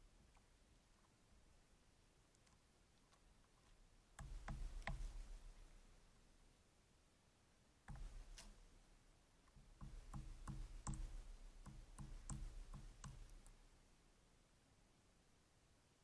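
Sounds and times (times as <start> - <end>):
woodpecker pecking at wood: 2.3 - 5.8, 7.9 - 8.7, 9.4 - 13.6.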